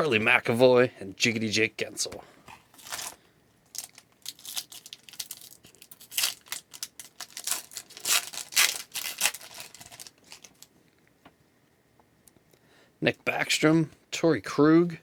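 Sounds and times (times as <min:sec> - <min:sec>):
wrapper tearing and crinkling: 0:02.7 - 0:10.7.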